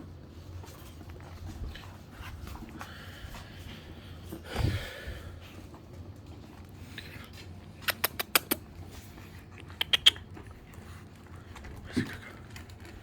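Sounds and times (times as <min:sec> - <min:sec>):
sharp clicks: 0:07.8 - 0:08.6
puppy huffing: 0:09.6 - 0:11.0.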